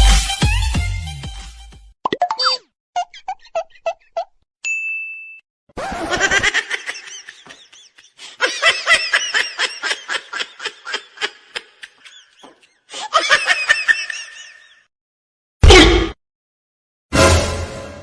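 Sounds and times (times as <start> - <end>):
high-pitched laughter: 3.0 - 4.4, 5.8 - 14.9.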